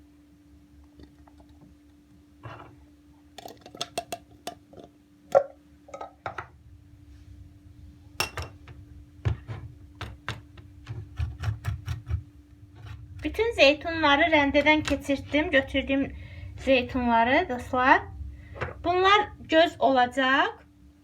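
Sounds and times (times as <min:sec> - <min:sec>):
low hum: 0:04.7 - 0:21.0.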